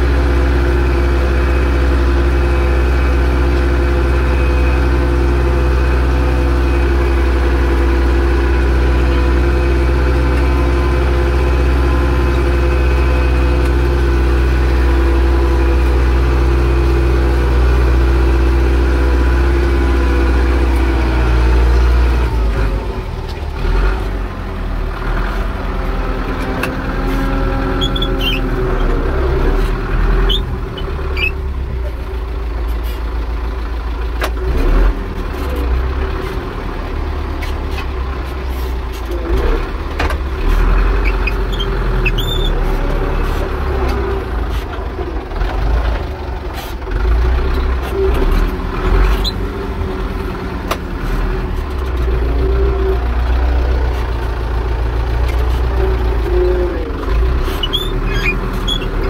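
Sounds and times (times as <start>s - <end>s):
tractor diesel engine running: 0.0s - 59.0s
brief high squeaks: 27.0s - 28.5s, 30.2s - 31.5s, 41.0s - 43.5s, 57.4s - 59.0s.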